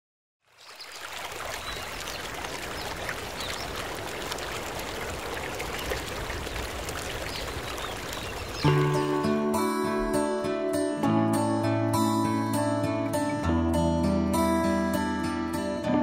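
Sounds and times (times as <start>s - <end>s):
water flowing: 0.5s - 9.6s.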